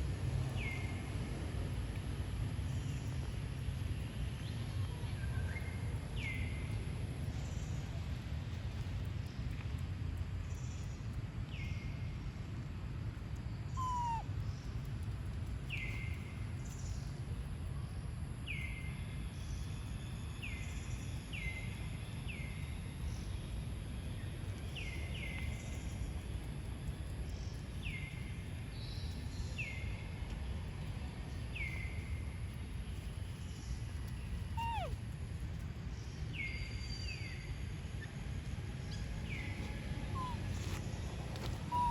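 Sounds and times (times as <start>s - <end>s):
monkey calling: 13.8s - 14.2s, 34.6s - 35.0s, 40.2s - 40.4s, 41.7s - 41.9s.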